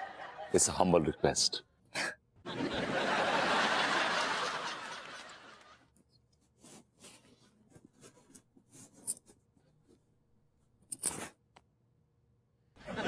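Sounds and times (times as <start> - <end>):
laugh track crowd laughing: 0.0 - 1.2, 2.4 - 5.8, 12.8 - 13.0.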